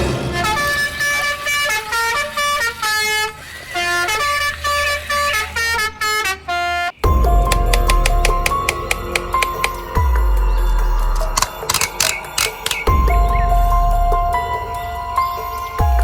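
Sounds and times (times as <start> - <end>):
horn-like musical notes: 0.0 - 16.0
music with a regular beat: 7.0 - 16.0.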